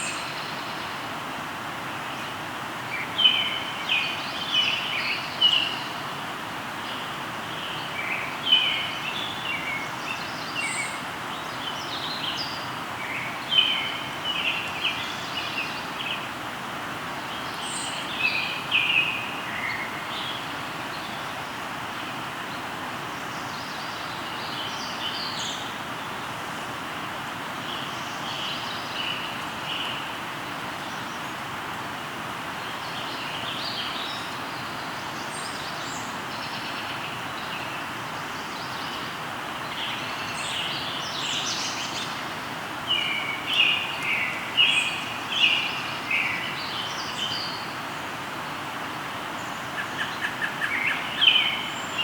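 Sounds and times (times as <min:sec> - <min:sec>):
flowing river rushing: 0:00.0 - 0:52.0
birds chirping and trilling: 0:49.4 - 0:52.0.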